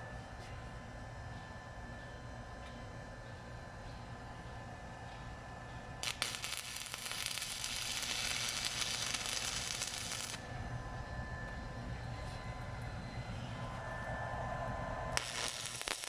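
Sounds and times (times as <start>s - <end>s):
welding arc crackling sizzle: 6.0s - 10.4s, 15.2s - 16.0s.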